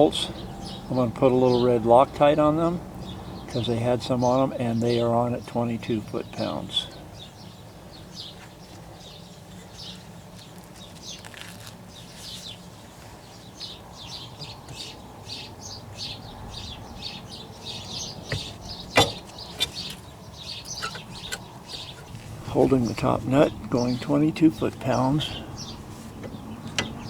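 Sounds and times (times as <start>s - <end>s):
birds chirping: 0.0s - 27.0s
steady low hum: 14.4s - 27.0s.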